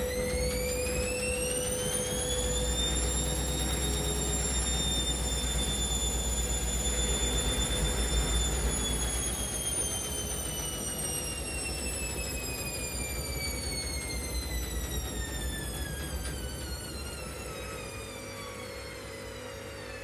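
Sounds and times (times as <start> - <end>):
washing machine motor whine: 0.0 - 20.0.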